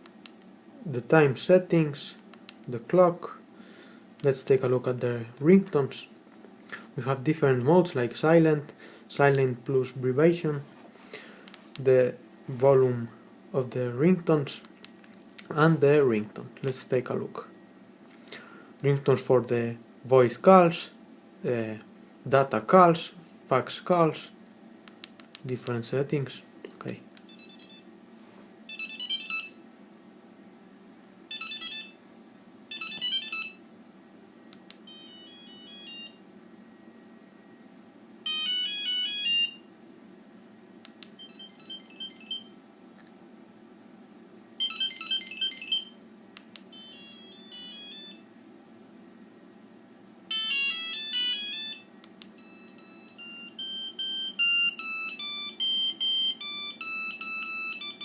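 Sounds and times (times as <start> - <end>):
mobile phone ringtones beeping: 27.3 - 27.9, 28.7 - 29.6, 31.3 - 32.0, 32.7 - 33.6, 34.9 - 36.2, 38.2 - 39.7, 41.2 - 42.5, 44.6 - 46.0, 46.7 - 48.2, 50.3 - 58.0.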